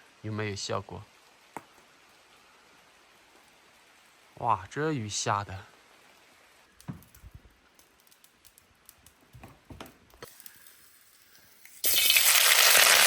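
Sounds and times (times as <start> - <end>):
faint rain hiss: 0.0 - 13.0
soft knocks: 6.8 - 7.5, 9.4 - 10.0.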